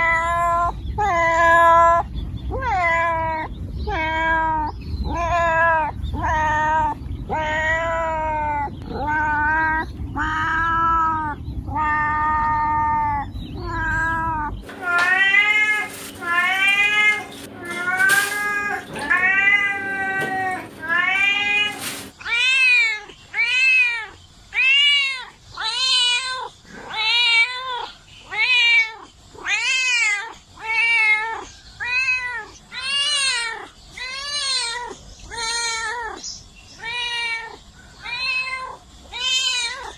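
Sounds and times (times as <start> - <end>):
low rumbling background: 0.0 - 22.1
cats meowing: 0.0 - 39.9.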